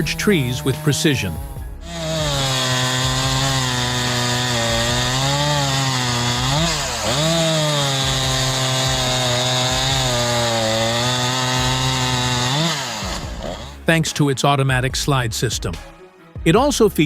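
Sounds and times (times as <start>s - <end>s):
chainsaw cutting wood: 0.0s - 13.8s.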